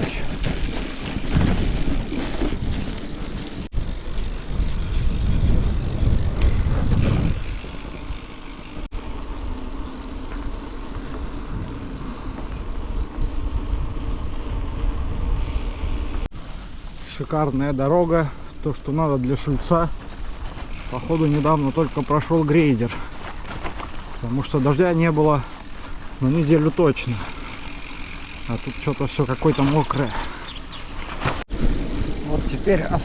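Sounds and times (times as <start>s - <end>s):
wind buffeting microphone: 0.0s - 9.8s, 10.8s - 16.3s
bicycle tyres humming on dirt: 0.0s - 33.0s.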